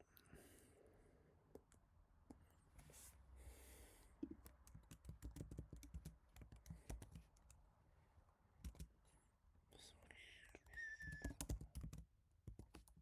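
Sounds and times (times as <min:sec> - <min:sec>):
soft keyboard keystrokes: 0:04.3 - 0:07.6, 0:08.6 - 0:09.0, 0:10.4 - 0:13.0.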